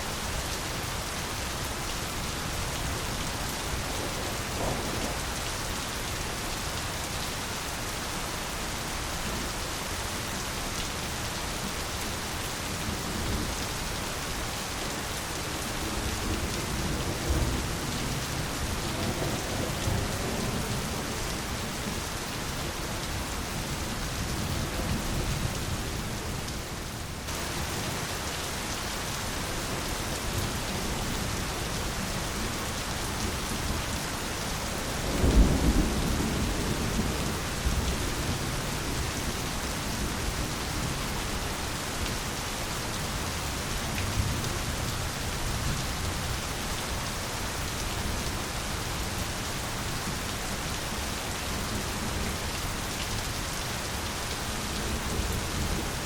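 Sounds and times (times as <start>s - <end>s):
heavy rain: 0.0s - 56.0s
thunder rumbling: 3.8s - 5.4s.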